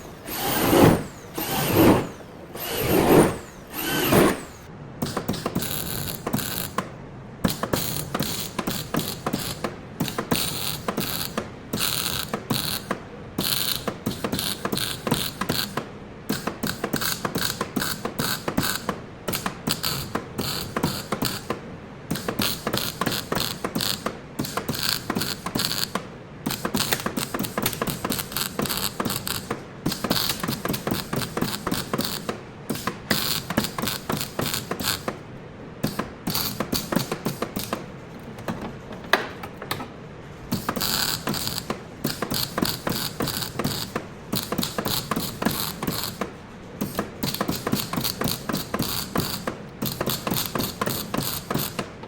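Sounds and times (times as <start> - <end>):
rapid mechanical clicking: 0.0 - 35.2, 35.8 - 52.0.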